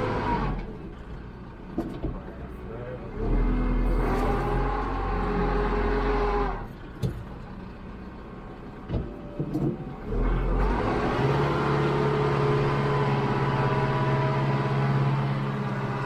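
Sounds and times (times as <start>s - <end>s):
tractor diesel engine revving: 0.0s - 0.9s, 3.1s - 8.8s, 10.0s - 16.0s.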